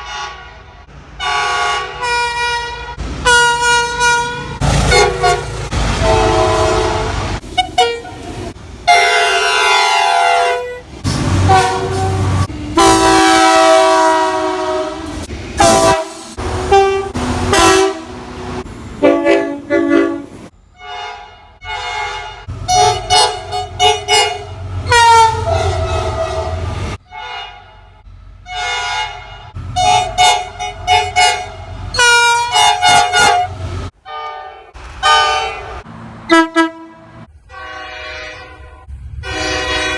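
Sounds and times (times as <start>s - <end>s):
locomotive air horn blasts: 0.0s - 18.3s, 19.0s - 39.9s
low rumble of train: 0.0s - 39.9s.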